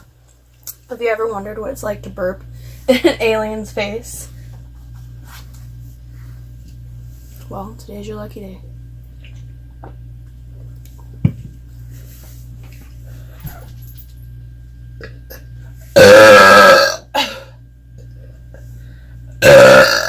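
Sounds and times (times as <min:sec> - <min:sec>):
woman burping: 0:15.0 - 0:17.6, 0:19.4 - 0:20.0.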